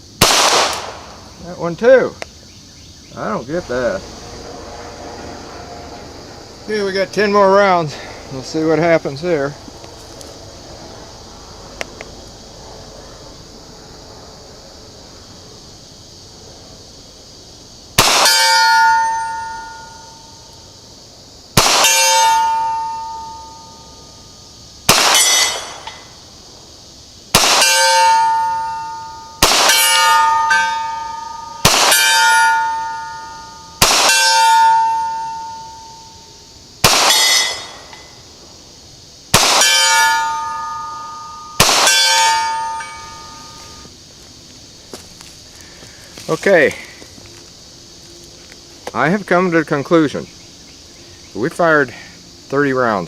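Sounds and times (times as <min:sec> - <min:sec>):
gunshots: 0:00.2 - 0:01.2, 0:18.0 - 0:18.4, 0:21.6 - 0:22.1, 0:24.9 - 0:25.9, 0:27.3 - 0:28.2, 0:29.4 - 0:30.3, 0:31.6 - 0:32.1, 0:33.8 - 0:34.3, 0:36.8 - 0:37.8, 0:39.3 - 0:39.9, 0:41.6 - 0:42.4
bullet ringing on steel target: 0:18.1 - 0:20.2, 0:21.8 - 0:24.0, 0:25.0 - 0:26.1, 0:27.4 - 0:36.2, 0:36.9 - 0:38.2, 0:39.4 - 0:43.9.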